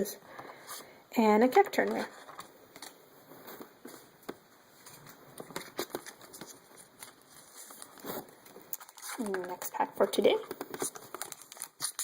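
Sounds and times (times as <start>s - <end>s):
cards clicking and rustling: 4.8s - 12.0s.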